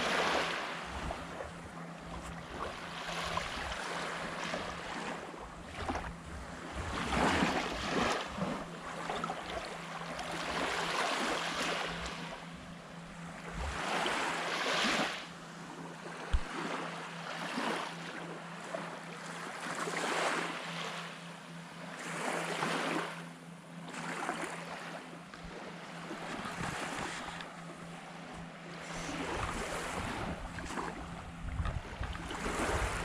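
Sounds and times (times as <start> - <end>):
small waves washing onto beach: 0.0 - 12.5, 13.3 - 21.2, 21.9 - 23.2, 23.8 - 33.0
wind on microphone: 29.0 - 33.0.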